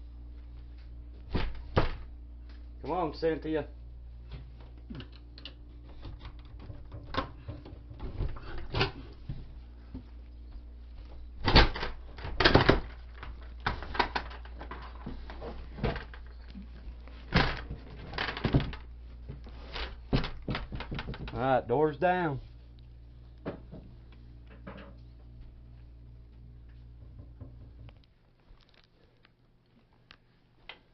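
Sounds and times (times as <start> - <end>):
door knocking and rattling: 20.1 - 21.4.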